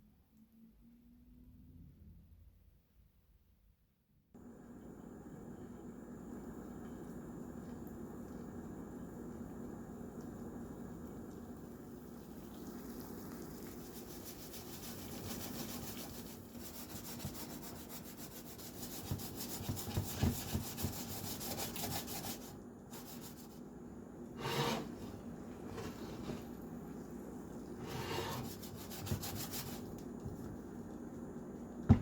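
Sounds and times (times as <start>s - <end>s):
rubbing and scraping kitchen noise: 12.7s - 23.7s, 24.3s - 30.9s.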